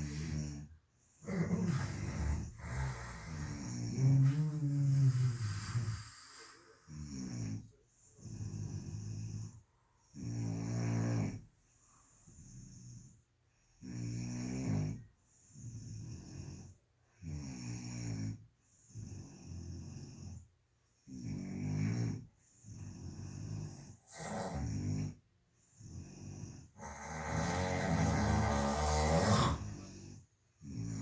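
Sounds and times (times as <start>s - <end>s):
person snoring: 0.0s - 7.6s, 22.9s - 25.2s, 25.9s - 31.0s.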